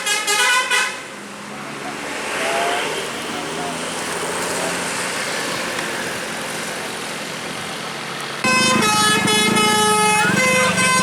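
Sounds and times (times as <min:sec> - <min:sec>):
bus multi-tone horn: 0:00.0 - 0:01.0, 0:08.4 - 0:11.0
road traffic noise: 0:00.0 - 0:11.0.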